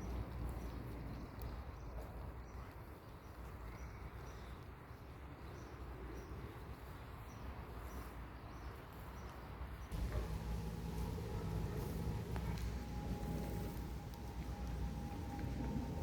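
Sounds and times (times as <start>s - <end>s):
low steady rumble: 9.9s - 16.0s.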